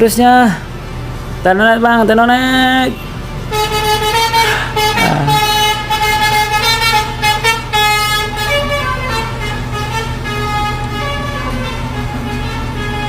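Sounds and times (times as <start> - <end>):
lorry engine running: 0.0 - 13.0
musical air horn tune: 3.5 - 13.0.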